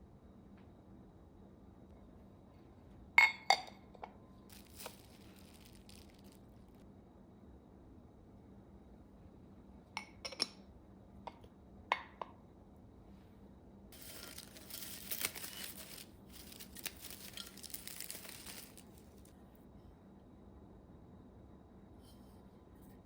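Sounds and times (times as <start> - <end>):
wrapping crinkling and rustling: 4.5 - 6.8, 14.0 - 19.4.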